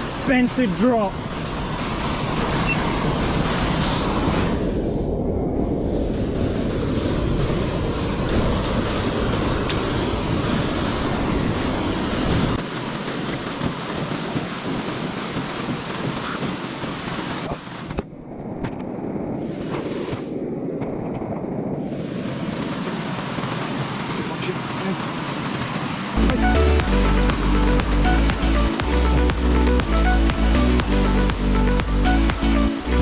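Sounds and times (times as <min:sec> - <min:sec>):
wind buffeting microphone: 0:01.1 - 0:24.2
flowing water rushing: 0:21.9 - 0:33.0.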